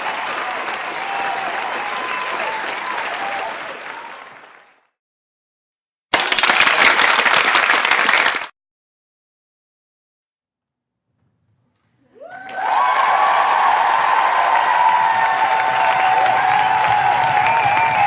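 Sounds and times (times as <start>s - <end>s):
crowd applause: 0.0s - 5.0s, 6.2s - 8.5s, 11.9s - 18.0s.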